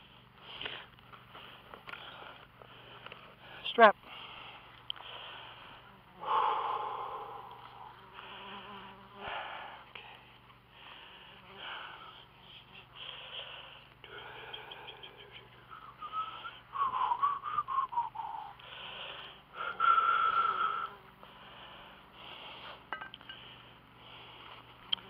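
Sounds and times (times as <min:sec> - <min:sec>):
man breathing hard: 0:00.0 - 0:24.8
whistling wheezes: 0:15.6 - 0:18.6, 0:19.6 - 0:21.0.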